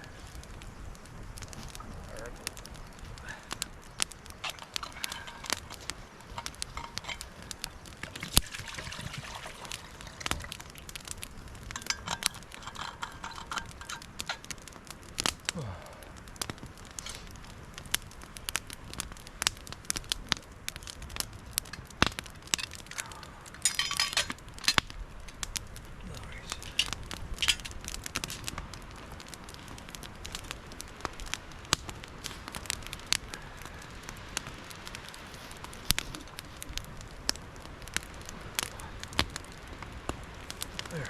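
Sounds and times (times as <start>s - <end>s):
campfire crackling and popping: 0.0s - 41.0s
clinking: 11.8s - 14.5s, 23.6s - 24.8s.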